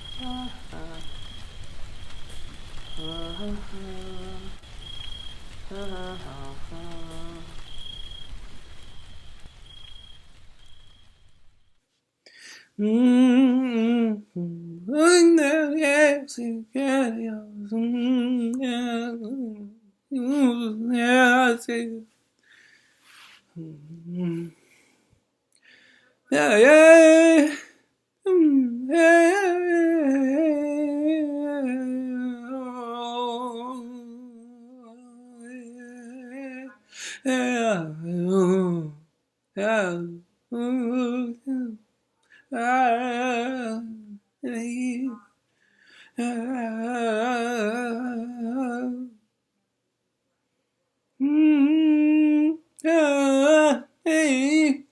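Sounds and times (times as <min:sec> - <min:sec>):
person humming a melody: 0:00.0 - 0:01.2, 0:03.0 - 0:04.6, 0:05.7 - 0:07.6, 0:12.8 - 0:22.0, 0:23.6 - 0:24.6, 0:26.3 - 0:39.0, 0:39.6 - 0:41.8, 0:46.2 - 0:49.2, 0:51.2 - 0:54.9
solo voice singing with vibrato: 0:00.0 - 0:01.5, 0:02.8 - 0:04.6, 0:05.6 - 0:08.0, 0:12.7 - 0:22.1, 0:23.6 - 0:24.6, 0:26.3 - 0:45.4, 0:46.1 - 0:49.2, 0:51.2 - 0:54.9.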